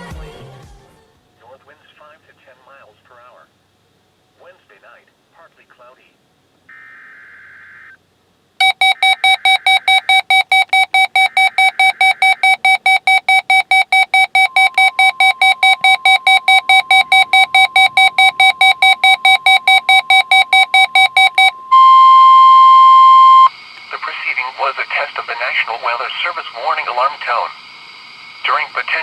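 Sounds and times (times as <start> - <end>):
rapid alarm beeping: 8.6 - 23.5
steady warning alarm tone: 8.6 - 23.5.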